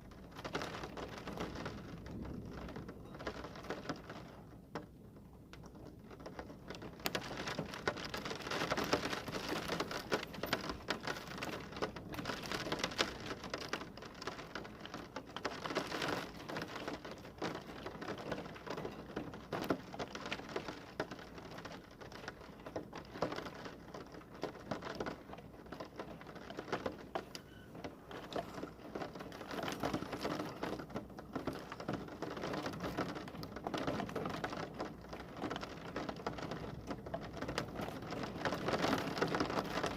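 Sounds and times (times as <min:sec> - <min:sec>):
heavy rain on hard surface: 0:00.0 - 0:39.9.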